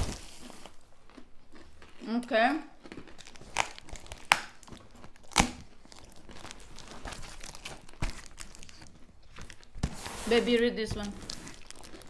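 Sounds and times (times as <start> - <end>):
plastic packaging crinkling: 2.8 - 12.0
faint rustling and scratching: 8.8 - 12.0.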